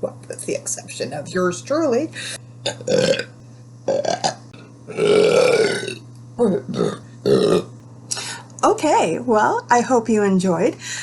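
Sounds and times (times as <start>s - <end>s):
woman burping: 2.6s - 3.3s, 3.9s - 7.7s.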